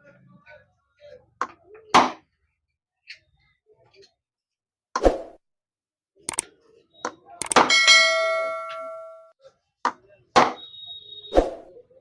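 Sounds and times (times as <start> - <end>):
hammer striking metal: 7.4 - 9.3
metal ringing: 7.5 - 9.3.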